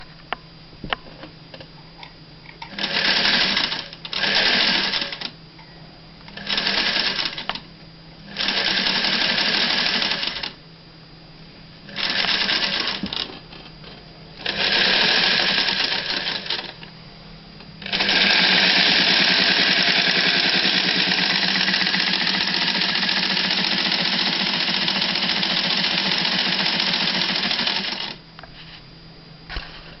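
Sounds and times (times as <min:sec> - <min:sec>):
electric sewing machine running: 0:02.7 - 0:05.3, 0:06.4 - 0:07.6, 0:08.3 - 0:10.6, 0:11.9 - 0:13.4, 0:14.4 - 0:16.8, 0:17.8 - 0:28.2.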